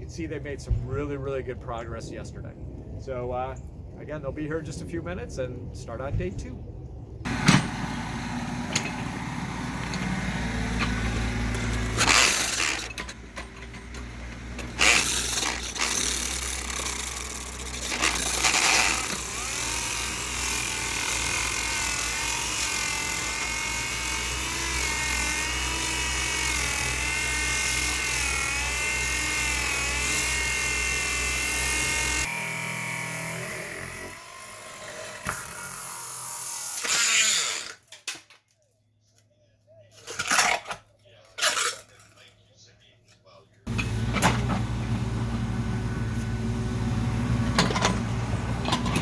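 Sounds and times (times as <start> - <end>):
power drill boring into concrete: 7.3 - 37.9.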